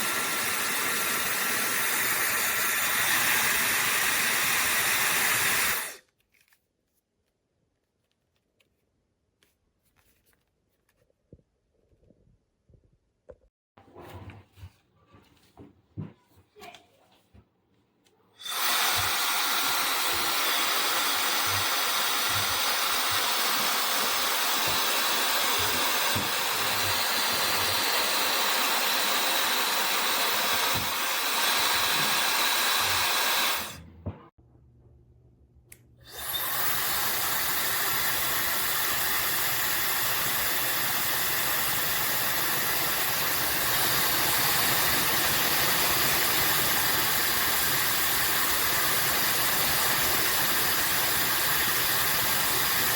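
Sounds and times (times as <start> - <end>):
hair dryer blowing: 0.0 - 6.0, 18.4 - 34.0, 36.0 - 52.9.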